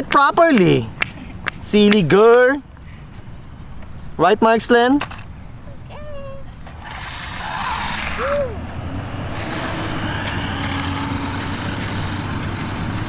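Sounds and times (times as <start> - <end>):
toy car motor whirring: 6.7 - 13.0.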